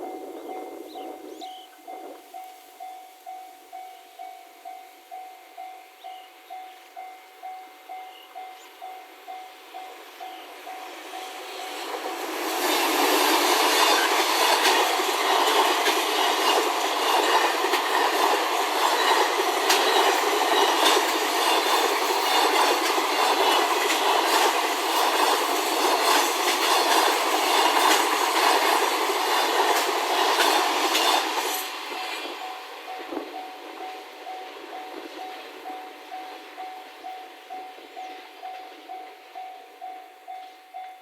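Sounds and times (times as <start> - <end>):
train wheels rushing on rail: 0.0 - 41.0
wheels clicking over rail joints: 11.8 - 34.0.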